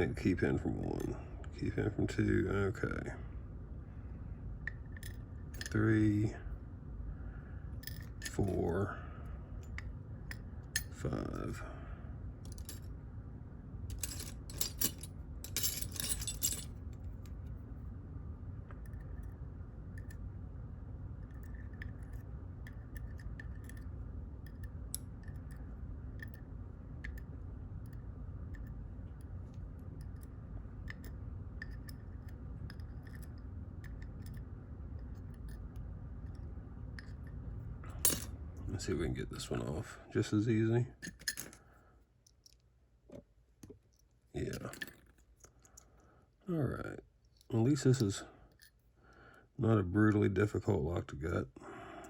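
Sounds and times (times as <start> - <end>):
small metal parts clinking: 4.7 - 5.9, 7.8 - 8.7, 12.4 - 12.9, 13.9 - 17.4, 37.9 - 38.3, 41.0 - 41.7, 43.9 - 45.9.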